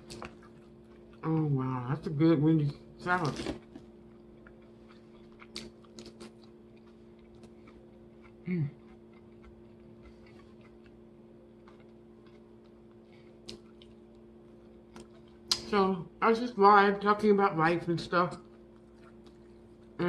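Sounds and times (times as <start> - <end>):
person chewing salad: 0.0 - 1.9, 3.3 - 15.7, 18.4 - 20.0
steady low hum: 0.0 - 20.0
person humming mm: 8.4 - 8.8.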